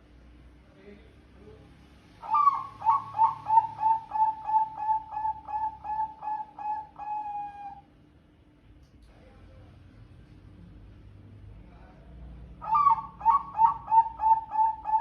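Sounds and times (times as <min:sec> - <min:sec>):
dove cooing: 0:02.2 - 0:07.9, 0:12.6 - 0:15.0.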